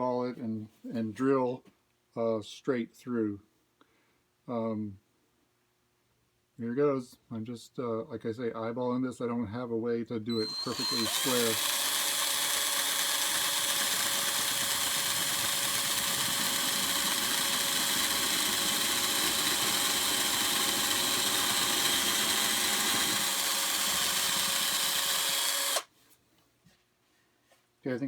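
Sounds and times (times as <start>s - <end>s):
electric drill whining: 10.3s - 25.9s.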